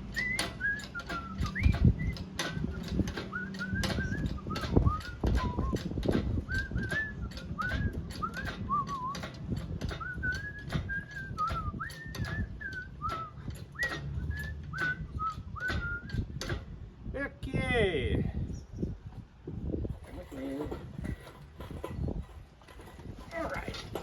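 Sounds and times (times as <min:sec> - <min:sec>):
person whistling a tune: 0:00.2 - 0:09.3, 0:09.9 - 0:16.4.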